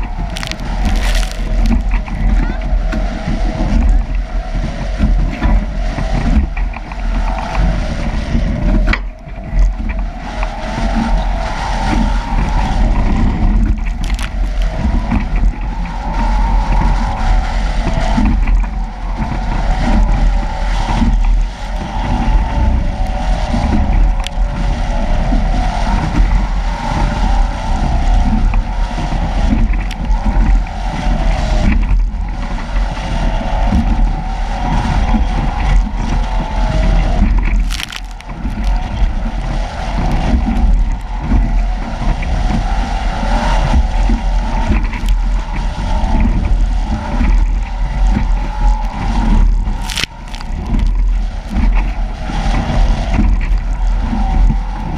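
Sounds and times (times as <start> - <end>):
water rushing along hull: 0.0 - 54.9
wind buffeting microphone: 0.0 - 54.9.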